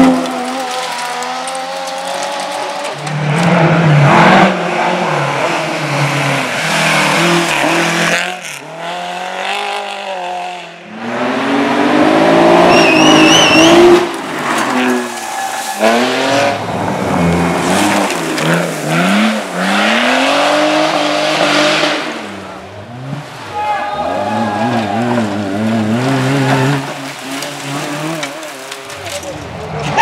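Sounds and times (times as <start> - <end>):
rally car engine revving: 0.0 - 30.0.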